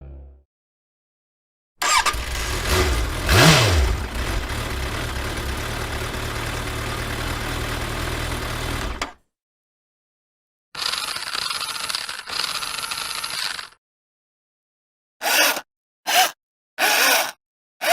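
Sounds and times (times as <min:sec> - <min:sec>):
car engine starting and idling: 0:01.8 - 0:09.1.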